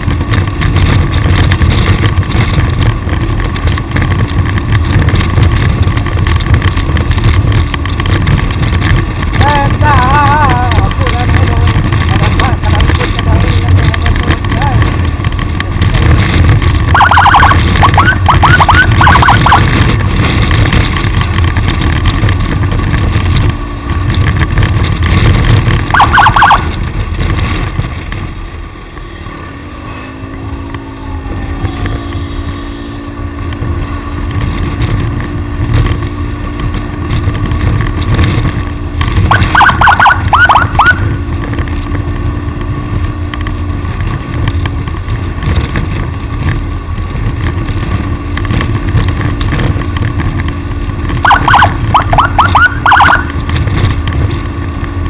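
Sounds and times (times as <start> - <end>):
vehicle engine and road noise: 0.0 - 55.0
wind buffeting microphone: 0.0 - 55.0
warbling high-pitched warning signal: 16.9 - 19.7, 25.9 - 26.6, 39.3 - 41.1, 51.2 - 53.3.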